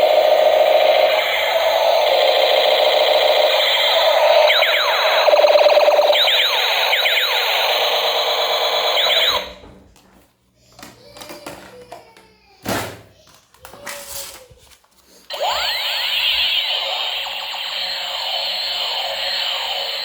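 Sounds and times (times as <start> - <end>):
electronic toy gun laser sweeps: 0.0 - 9.6, 15.3 - 20.0.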